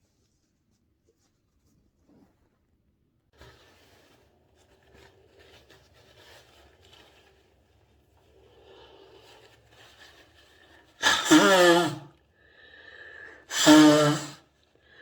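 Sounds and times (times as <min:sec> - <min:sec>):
faint rustling and rubbing: 0:00.0 - 0:11.0.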